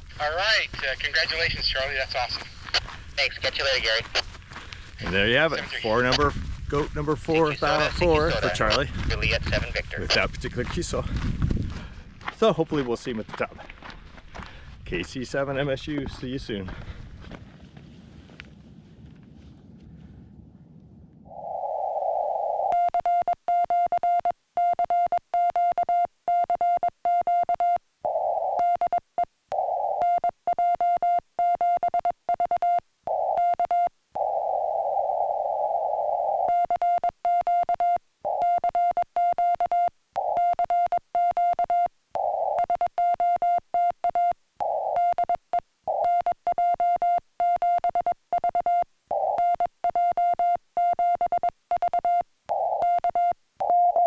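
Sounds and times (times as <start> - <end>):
morse code beeps: 7.7 - 10.2, 22.3 - 54.0.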